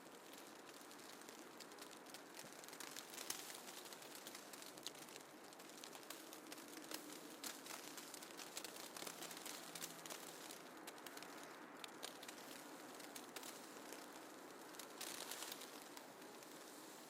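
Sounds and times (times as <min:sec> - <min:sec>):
small crackles and ticks: 0:00.0 - 0:17.0
soft snowfall hiss: 0:00.0 - 0:17.0.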